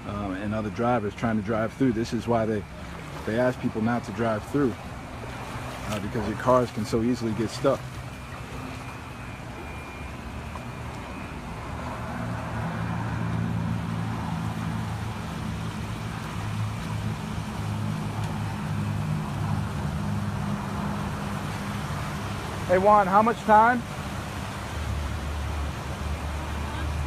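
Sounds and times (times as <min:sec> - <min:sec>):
car driving through floodwater: 0:00.0 - 0:27.0.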